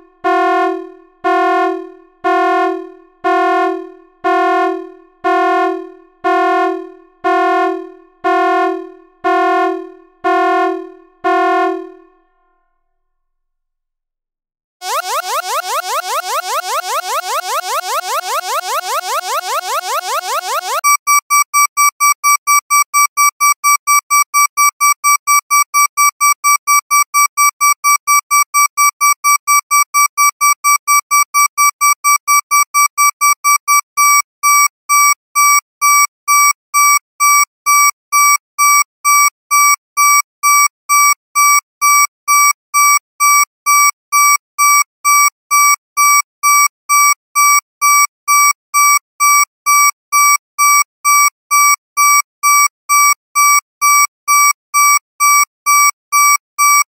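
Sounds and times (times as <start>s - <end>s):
shrill electronic alarm beeping: 14.8s - 21.0s.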